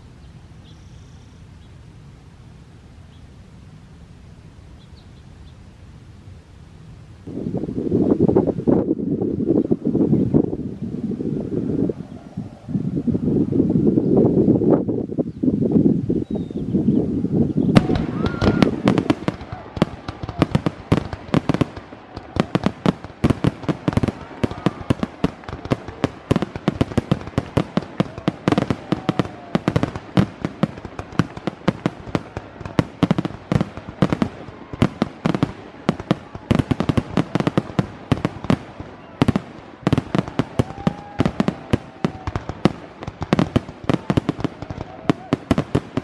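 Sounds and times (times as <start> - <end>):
fireworks bangs and pops: 17.7 - 46.0.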